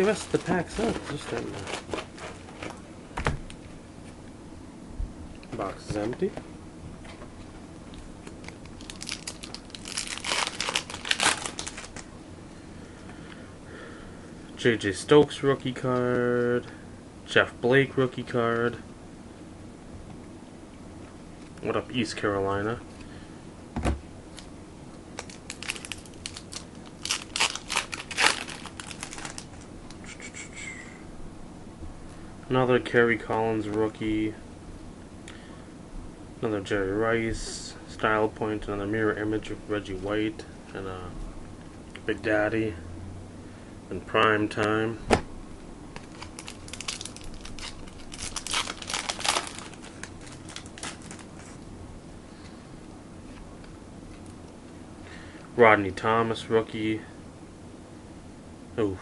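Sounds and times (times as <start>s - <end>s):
card pack wrapper crinkling and tearing: 0.0s - 2.8s, 8.2s - 12.1s, 25.2s - 29.7s, 46.0s - 51.5s.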